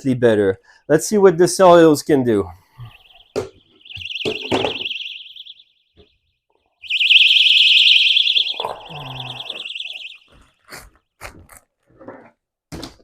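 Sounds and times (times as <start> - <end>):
electronic alarm warbling: 2.8 - 6.2, 6.8 - 10.4.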